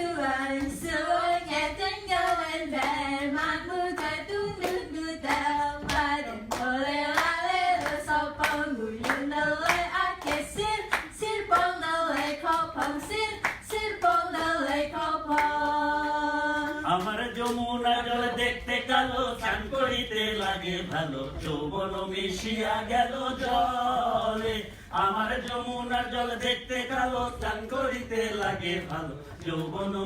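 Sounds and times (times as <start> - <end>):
voices singing together: 0.0 - 30.0
hand claps: 2.2 - 18.6, 24.3 - 25.7.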